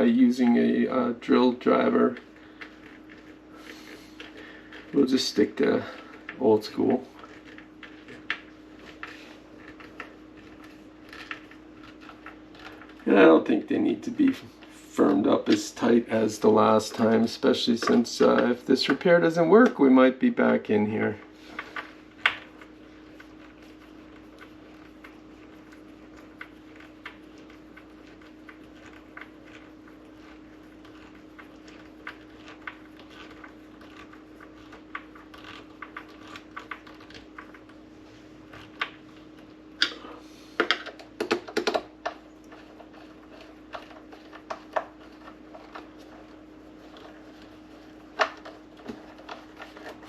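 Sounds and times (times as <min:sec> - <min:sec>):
faint steady hum: 0:00.0 - 0:50.0.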